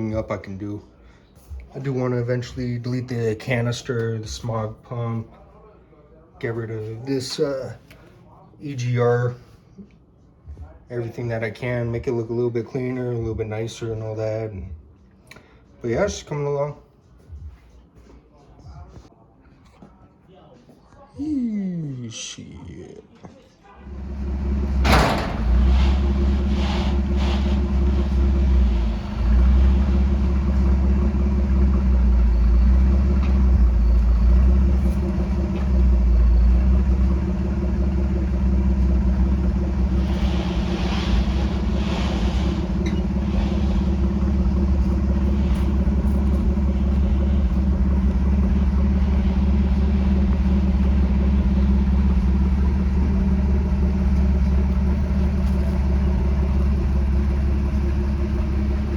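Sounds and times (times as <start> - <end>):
pickup engine rumbling: 23.8 - 58.9.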